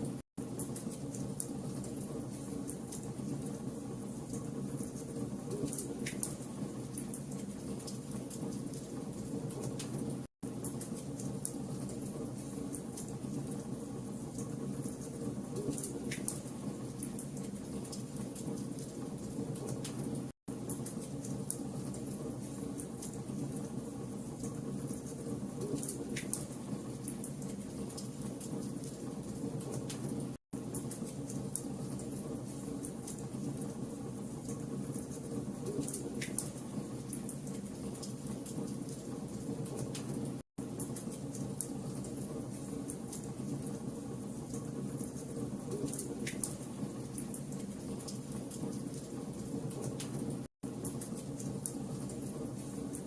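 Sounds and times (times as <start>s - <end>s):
fire crackling and popping: 4.3s - 13.6s.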